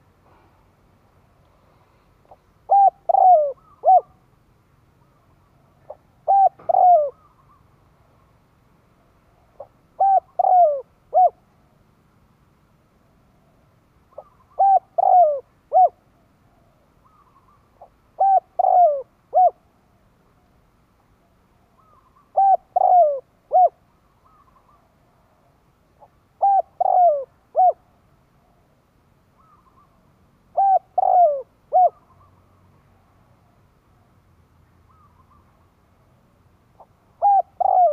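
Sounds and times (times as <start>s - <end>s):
dove cooing: 2.3s - 4.2s, 5.7s - 7.7s, 9.5s - 11.4s, 14.1s - 19.7s, 21.8s - 28.6s, 29.4s - 32.4s, 36.8s - 37.9s.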